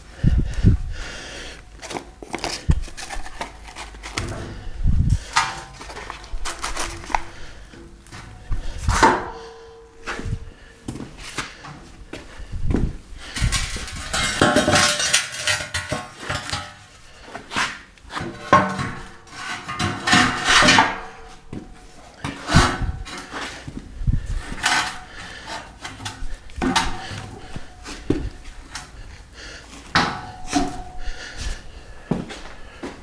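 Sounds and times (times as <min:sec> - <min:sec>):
metal tubing clanking: 0:13.3 - 0:17.0.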